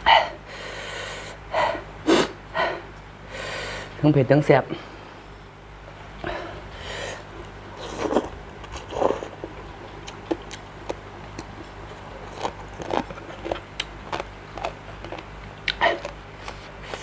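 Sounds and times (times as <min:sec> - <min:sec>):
low steady hum: 0:00.0 - 0:17.0
person chewing with mouth smacks: 0:07.4 - 0:17.0.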